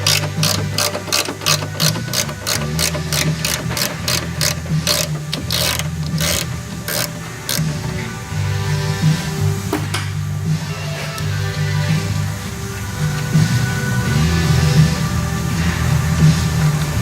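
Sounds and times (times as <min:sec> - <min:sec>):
ratchet wrench clicking: 0:00.0 - 0:08.0.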